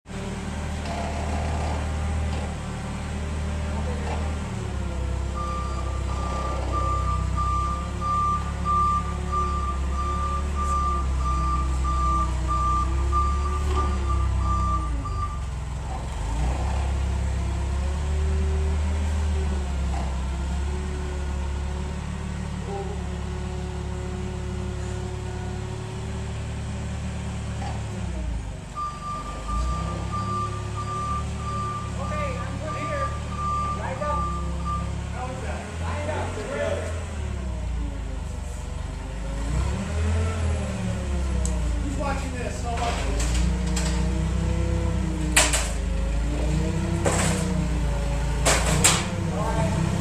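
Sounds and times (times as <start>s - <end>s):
reversing alarm beeping: 5.4s - 15.5s, 28.8s - 35.0s
vehicle engine running: 31.4s - 50.0s.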